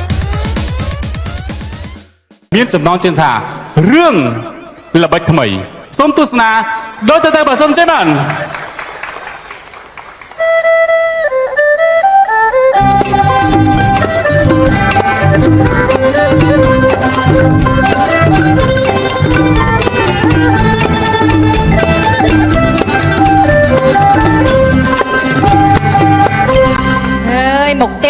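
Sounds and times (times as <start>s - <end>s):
drums with steady beat: 0.0s - 2.6s, 12.8s - 26.8s
lone instrumental melody: 10.4s - 28.0s.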